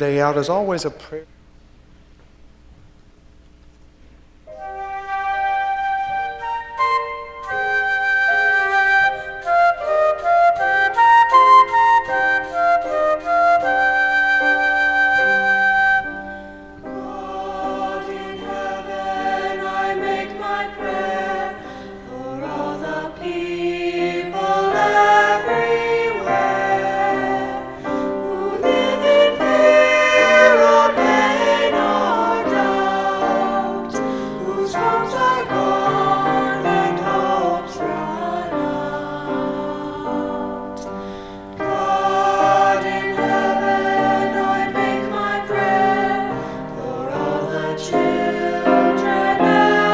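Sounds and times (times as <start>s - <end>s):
choir singing sustained chords: 4.5s - 49.9s.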